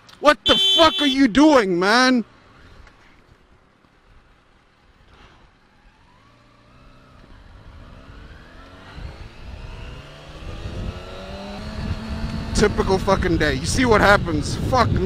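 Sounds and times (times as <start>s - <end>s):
low road rumble: 0.0s - 15.0s
vehicle engine accelerating: 5.1s - 13.4s.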